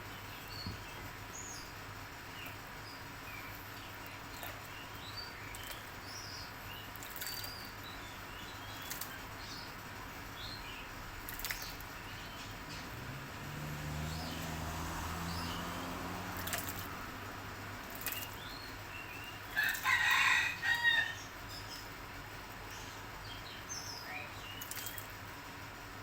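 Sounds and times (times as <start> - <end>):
small birds chirping: 0.0 - 26.0
rooster crowing: 19.4 - 21.4.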